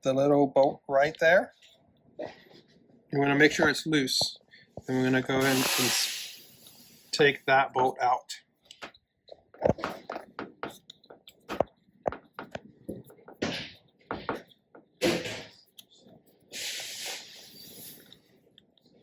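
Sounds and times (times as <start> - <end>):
hissing rustling noise: 5.4 - 7.0.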